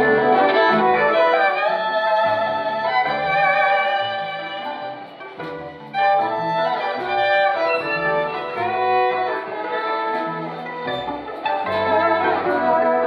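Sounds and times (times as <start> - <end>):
violin melody: 0.0 - 13.0.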